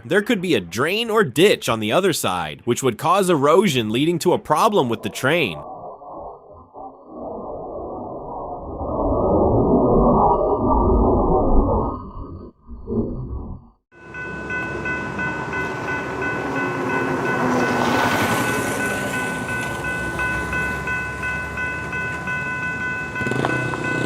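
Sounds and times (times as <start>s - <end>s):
train rumbling: 14.0s - 24.0s.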